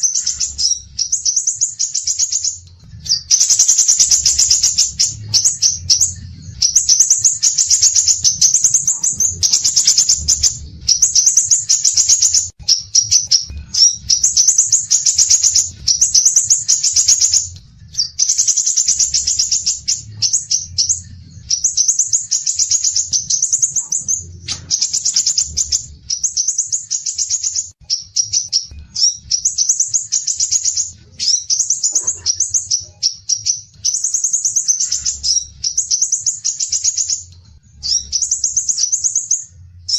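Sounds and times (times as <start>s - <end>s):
songbird trilling: 0.0s - 39.9s
faint low rumble: 2.6s - 18.2s, 18.9s - 26.7s.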